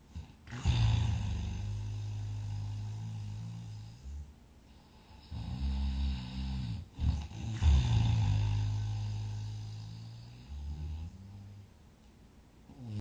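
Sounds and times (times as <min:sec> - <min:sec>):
person snoring loudly: 0:00.2 - 0:04.2, 0:05.1 - 0:11.2.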